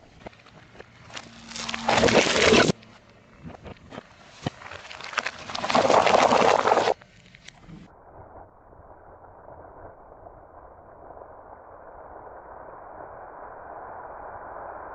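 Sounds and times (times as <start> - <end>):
car tyre crushing objects: 0.2 - 7.5
small cracks: 0.2 - 7.6.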